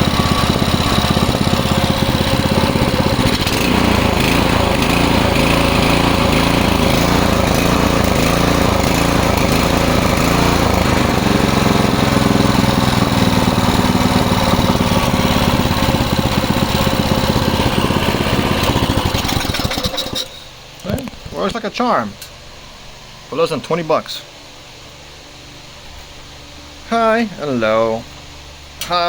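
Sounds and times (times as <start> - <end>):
pressure washer engine running: 0.0 - 20.3.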